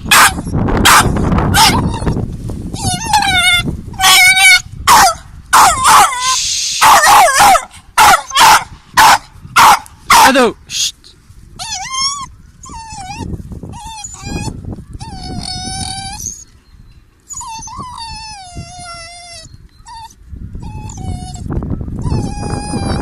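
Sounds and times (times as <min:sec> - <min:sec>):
dog howling whines: 0:01.5 - 0:02.2, 0:02.8 - 0:04.6, 0:11.6 - 0:16.5, 0:17.3 - 0:23.0.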